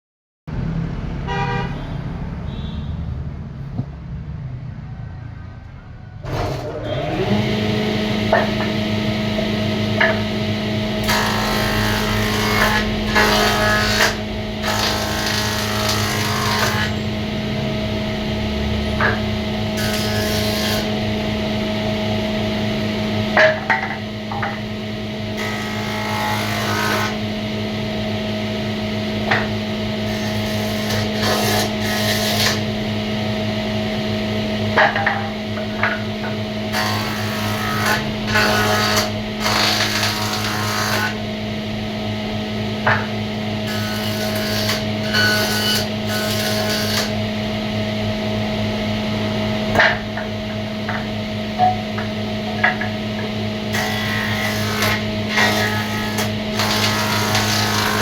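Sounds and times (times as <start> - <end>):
wood being cut with rushing noise: 6.2 - 27.4, 29.1 - 32.8, 34.8 - 41.3, 42.8 - 47.2, 52.6 - 58.0
woodworking machine humming: 6.2 - 58.0.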